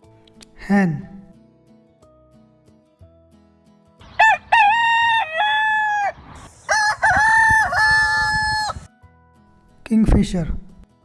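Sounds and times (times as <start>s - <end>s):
rooster crowing: 4.1s - 8.9s.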